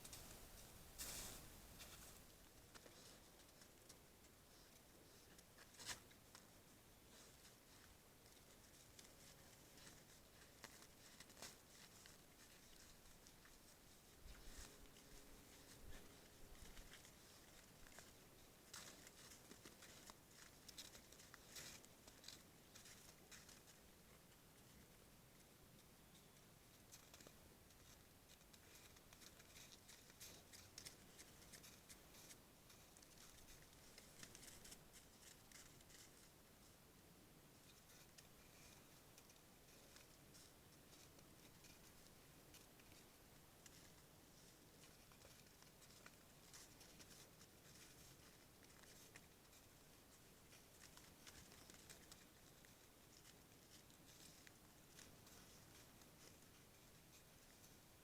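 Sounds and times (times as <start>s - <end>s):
light rustles: 0.0s - 6.5s, 26.1s - 36.4s
faint steady hiss: 0.0s - 58.0s
faint ticks and crackles: 0.0s - 58.0s.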